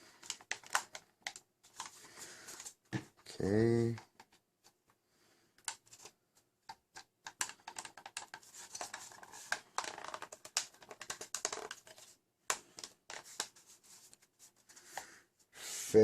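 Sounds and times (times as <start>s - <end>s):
plastic parts and pins clicking: 0.1s - 2.0s, 5.6s - 13.6s.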